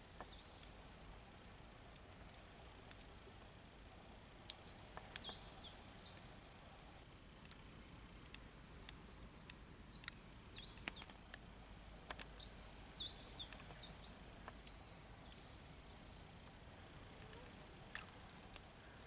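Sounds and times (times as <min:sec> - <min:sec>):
faint background hiss: 0:00.0 - 0:19.0
faint clicks: 0:01.9 - 0:03.3, 0:04.4 - 0:06.3, 0:07.0 - 0:15.5, 0:16.4 - 0:19.0
bird chirping: 0:04.5 - 0:06.4, 0:09.3 - 0:11.3, 0:12.1 - 0:16.3.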